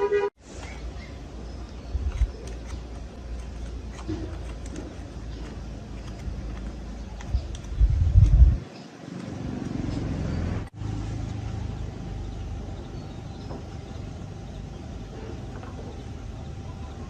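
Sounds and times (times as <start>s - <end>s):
small motorcycle engine running: 9.1s - 13.1s.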